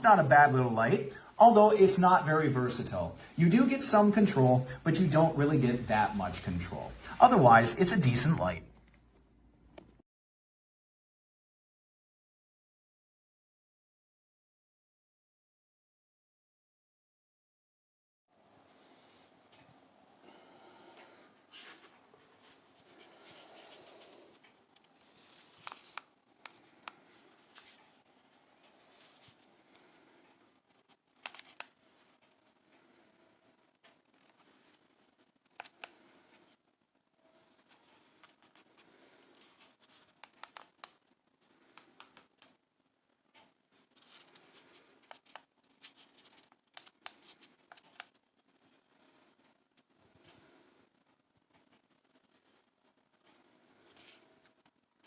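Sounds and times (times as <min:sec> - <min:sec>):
faint small clicks: 0:08.7 - 0:10.0, 0:40.2 - 0:41.0.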